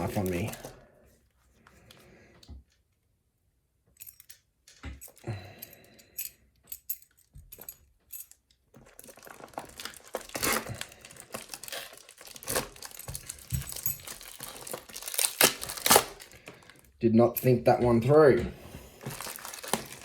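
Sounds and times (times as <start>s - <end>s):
packaging crinkling and tearing: 0.0s - 0.8s, 8.8s - 16.9s, 18.9s - 20.0s
clicks and rustles: 6.8s - 17.5s, 19.0s - 20.0s.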